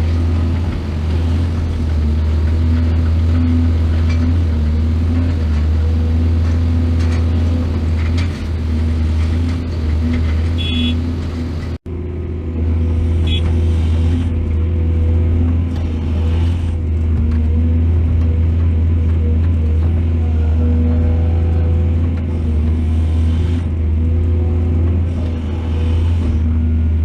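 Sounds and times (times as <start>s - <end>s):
diesel engine droning: 0.0s - 27.0s.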